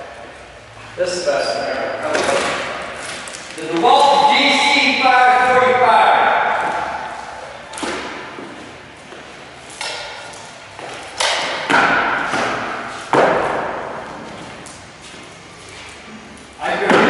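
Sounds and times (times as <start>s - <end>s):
heavy thuds on wood echoing: 10.8s - 14.2s.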